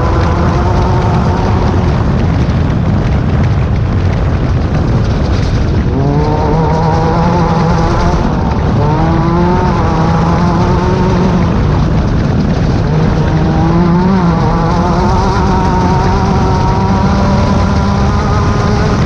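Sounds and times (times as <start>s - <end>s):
dense rushing noise: 0.0s - 19.0s
race car engine revving: 0.0s - 19.0s.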